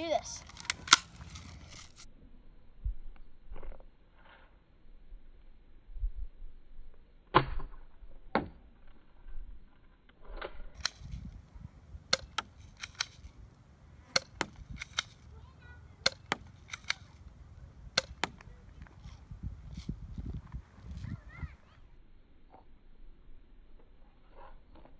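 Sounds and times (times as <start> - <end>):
airsoft guns firing: 0.6 - 1.3, 16.0 - 17.1.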